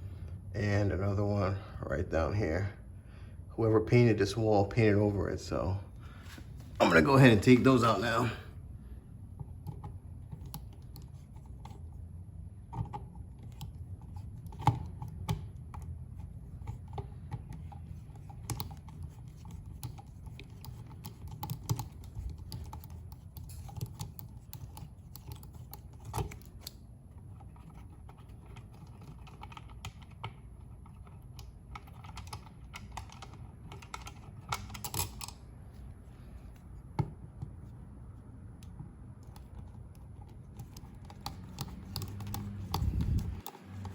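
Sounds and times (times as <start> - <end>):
screwdriver clicking and scraping: 12.7 - 35.4, 38.6 - 43.9.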